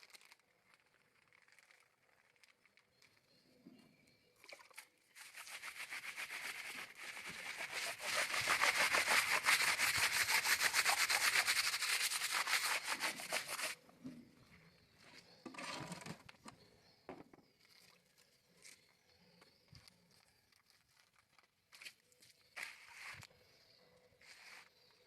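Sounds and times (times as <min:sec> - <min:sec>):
laundry rubbed by hand: 0:05.2 - 0:13.8.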